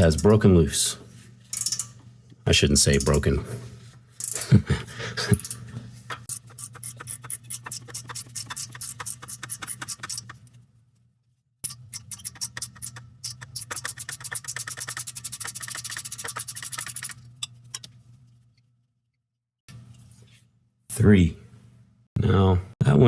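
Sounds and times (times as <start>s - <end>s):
ratcheting wrench clicking: 1.5s - 2.0s, 6.2s - 10.3s, 11.6s - 17.2s.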